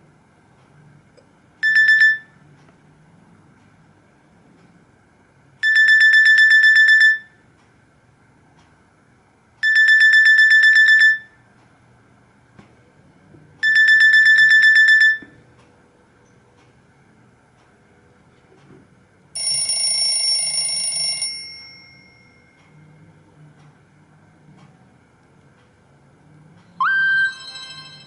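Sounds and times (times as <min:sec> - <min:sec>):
pulsing electronic ringtone: 0:01.6 - 0:02.4, 0:05.6 - 0:07.3, 0:09.6 - 0:11.3, 0:13.6 - 0:15.3, 0:26.8 - 0:28.0.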